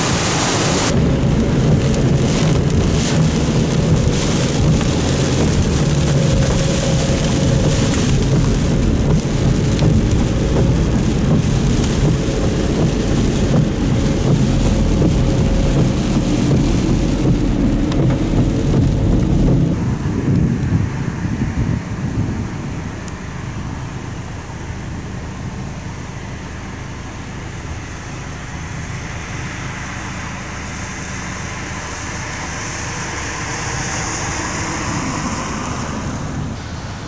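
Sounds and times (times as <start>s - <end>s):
deep thunder rumble: 0.0s - 23.9s
heavy rain falling: 0.0s - 37.0s.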